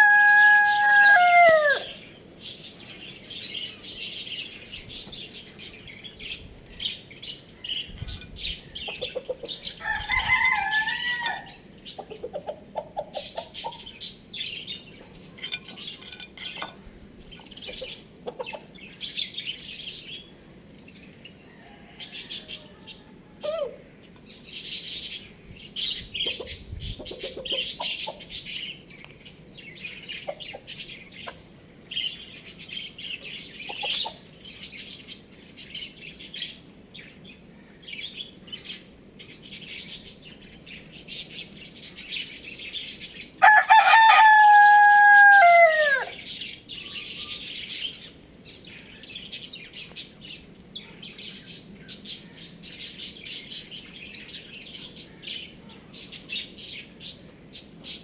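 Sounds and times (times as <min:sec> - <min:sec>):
rooster crowing: 0:00.0 - 0:02.0, 0:09.8 - 0:11.7, 0:21.4 - 0:23.8, 0:43.4 - 0:46.2
small birds chirping: 0:00.0 - 0:58.0.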